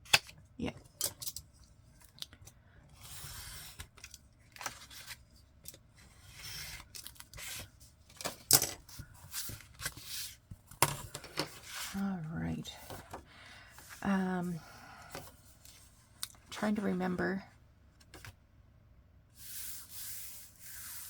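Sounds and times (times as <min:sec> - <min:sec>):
paper scraping swishes: 0:19.4 - 0:21.0.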